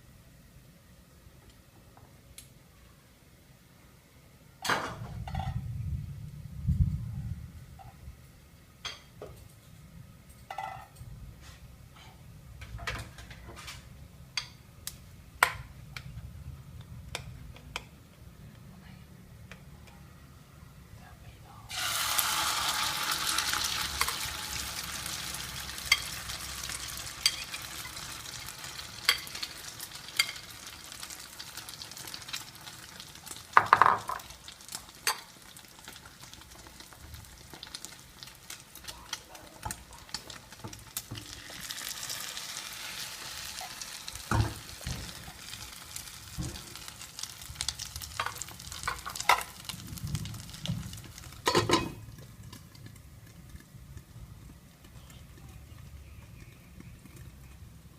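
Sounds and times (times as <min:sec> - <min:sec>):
food sizzling in a pan: 0:21.7 - 0:54.1.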